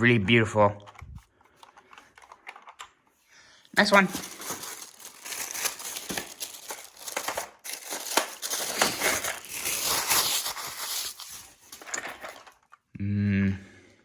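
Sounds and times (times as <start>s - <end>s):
plastic packaging crinkling: 3.8s - 12.8s.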